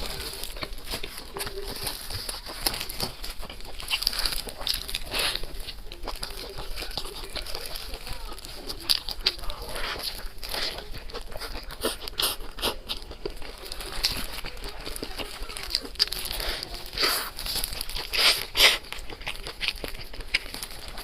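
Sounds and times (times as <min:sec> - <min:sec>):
crunching and chewing food: 0:00.0 - 0:21.0.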